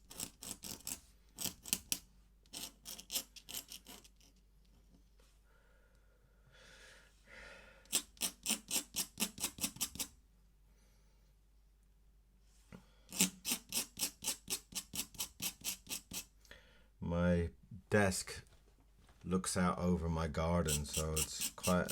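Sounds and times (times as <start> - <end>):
pen scratching on paper: 0.0 - 4.3, 7.9 - 10.1, 13.1 - 16.3, 20.7 - 21.9.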